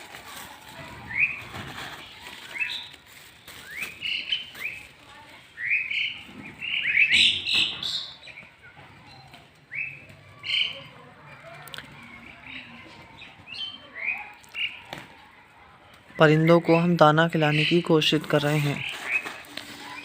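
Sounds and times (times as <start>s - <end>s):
birds chirping: 0.0s - 20.0s.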